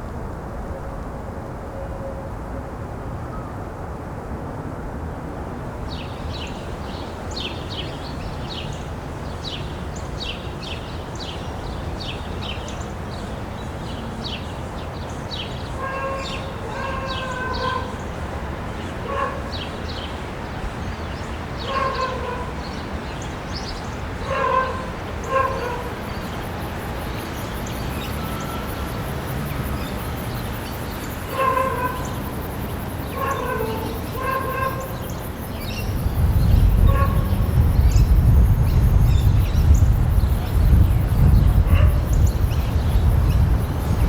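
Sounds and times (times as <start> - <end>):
dog barking: 15.8 - 18.0, 19.0 - 19.6, 21.6 - 22.6, 24.2 - 26.3, 31.2 - 35.1, 36.8 - 37.4, 41.6 - 42.2
small birds chirping: 18.8 - 44.0.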